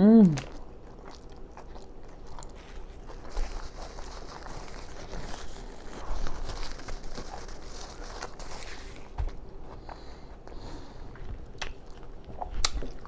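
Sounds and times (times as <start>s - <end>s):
chewing and lip smacking: 0.4s - 6.0s, 9.9s - 13.0s.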